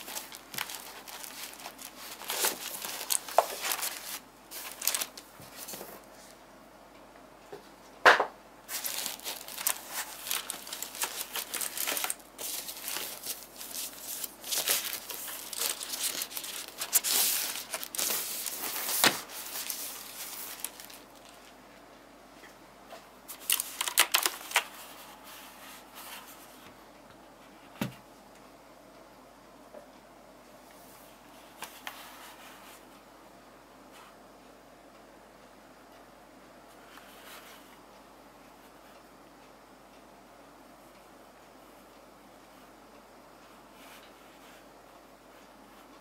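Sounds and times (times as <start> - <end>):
clicky mechanical keyboard typing: 23.4 - 24.6.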